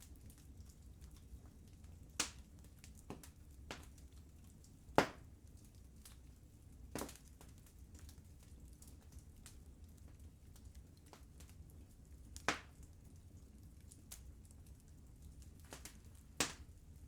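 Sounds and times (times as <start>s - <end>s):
wood fire crackling: 0.0s - 17.0s
fire pops: 15.6s - 16.7s.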